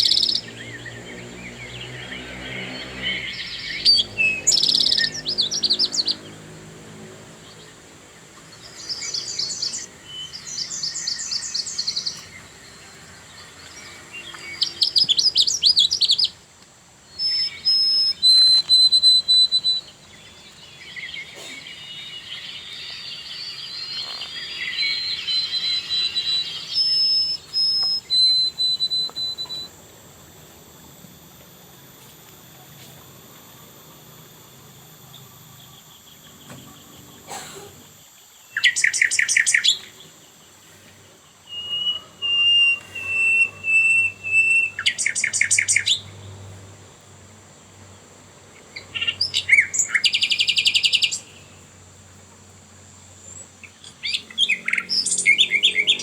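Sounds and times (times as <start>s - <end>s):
high whistled bird notes: 0.0s - 6.5s, 8.5s - 16.4s, 17.1s - 30.4s, 34.2s - 40.1s, 41.4s - 46.1s, 48.8s - 51.3s, 54.0s - 56.0s
songbirds chirping and trilling: 0.0s - 56.0s.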